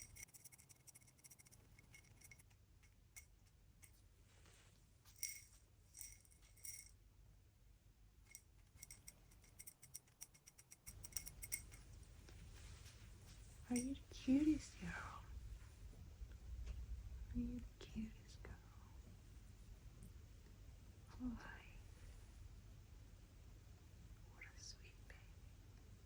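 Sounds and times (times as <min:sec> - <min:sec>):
pigeon pecking at seed: 0:00.0 - 0:04.1, 0:08.3 - 0:13.7.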